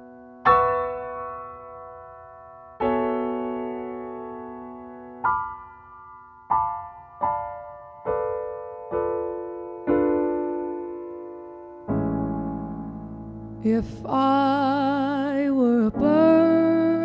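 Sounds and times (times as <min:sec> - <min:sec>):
piano chords ringing: 0:00.0 - 0:17.0.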